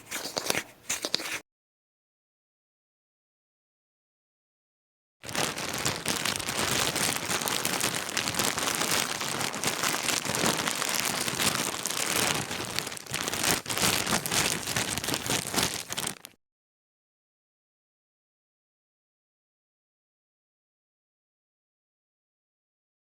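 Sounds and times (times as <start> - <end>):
dense crackling noise: 5.2 - 16.3.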